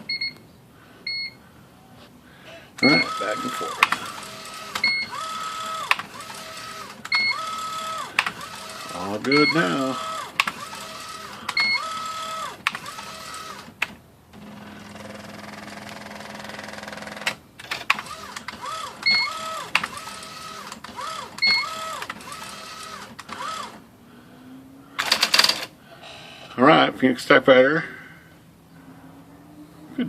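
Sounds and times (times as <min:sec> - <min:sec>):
carrier motor whine: 0:02.8 - 0:13.8, 0:18.0 - 0:23.8
carrier clicks: 0:02.8 - 0:14.0.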